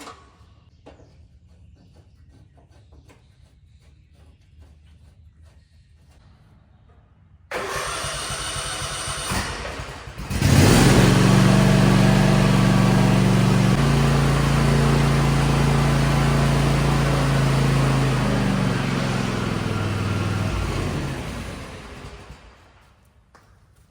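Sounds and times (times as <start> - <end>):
electric starter cranking: 7.5 - 22.6
mower engine running: 7.5 - 22.7.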